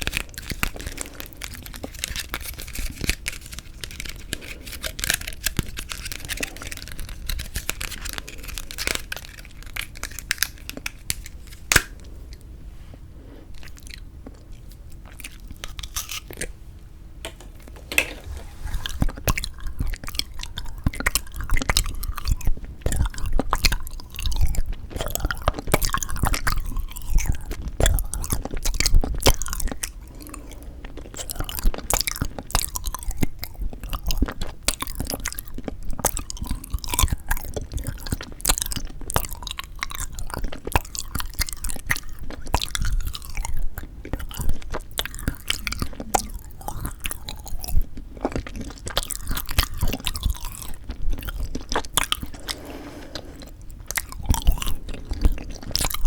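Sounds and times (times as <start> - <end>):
chewing frozen jelly: 0.0 - 12.5, 13.4 - 16.8, 17.5 - 56.0.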